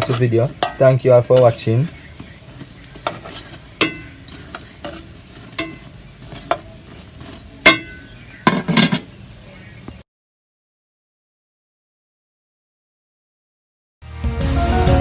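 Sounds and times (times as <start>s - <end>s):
metal utensil knocking on pot: 0.0s - 9.1s
food sizzling in oil: 0.0s - 10.0s.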